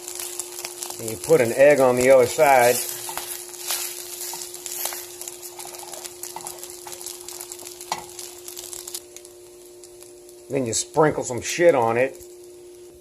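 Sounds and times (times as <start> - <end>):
food sizzling in frying pan: 0.0 - 13.0
steady hum: 0.0 - 13.0
utensil clicking in pan: 4.3 - 8.3.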